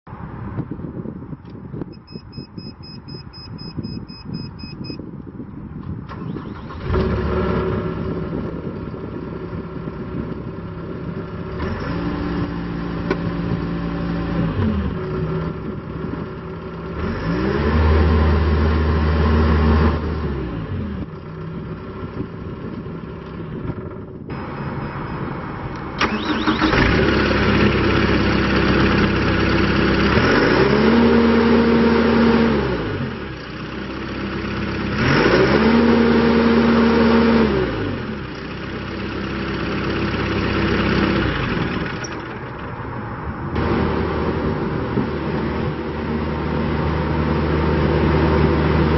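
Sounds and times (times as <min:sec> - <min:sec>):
rapid electronic beeping: 0:01.9 - 0:05.0
diesel engine starting and revving: 0:05.7 - 0:48.9.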